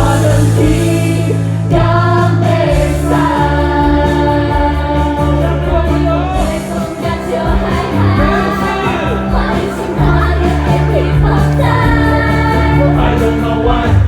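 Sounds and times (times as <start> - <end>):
live band accompaniment: 0.0 - 14.0
singers holding long notes: 0.0 - 14.0.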